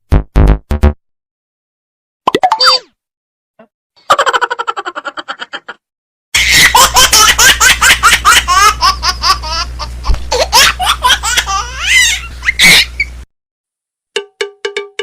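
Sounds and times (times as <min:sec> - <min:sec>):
person laughing heartily: 0:04.1 - 0:05.8.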